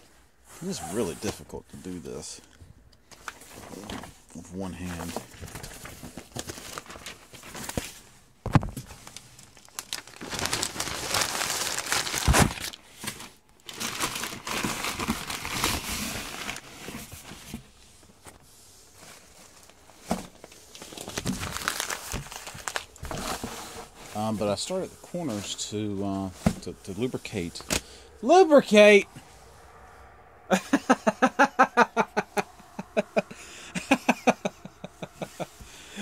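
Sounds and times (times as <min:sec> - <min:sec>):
newspaper crumpling and rustling: 0:04.8 - 0:17.7, 0:19.0 - 0:27.9.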